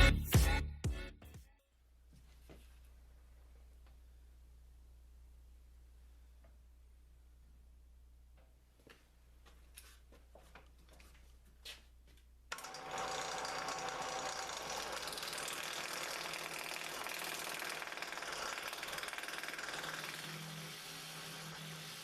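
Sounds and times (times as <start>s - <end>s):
lathe gouge cutting wood: 12.5s - 22.0s.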